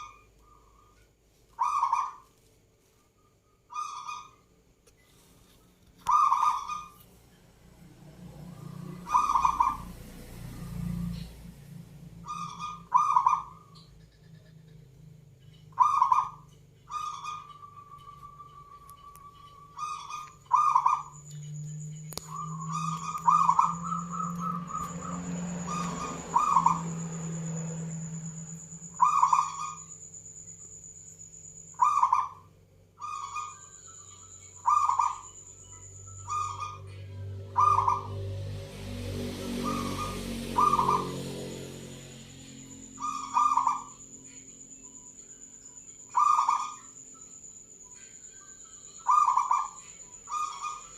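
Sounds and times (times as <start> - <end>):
dove cooing: 1.6 - 2.2, 6.0 - 6.9, 8.8 - 10.1, 15.7 - 21.2, 22.2 - 27.1, 31.8 - 33.6, 34.6 - 35.3, 36.3 - 38.3, 39.3 - 41.8, 43.0 - 44.0, 46.2 - 46.9, 49.0 - 50.9
thin high steady tone: 17.4 - 39.0.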